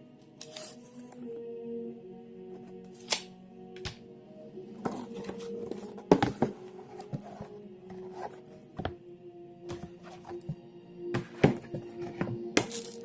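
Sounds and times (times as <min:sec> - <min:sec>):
soft background music: 0:00.0 - 0:13.0.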